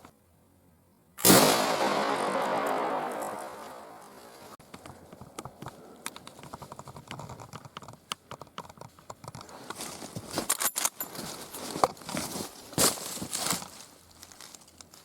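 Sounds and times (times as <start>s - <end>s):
small clicks knocks and crinkles: 4.6s - 15.0s.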